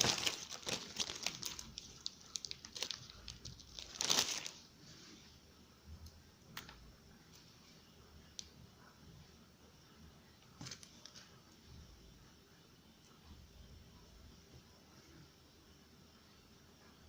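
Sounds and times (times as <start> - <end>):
packaging crinkling: 0.0 - 4.6.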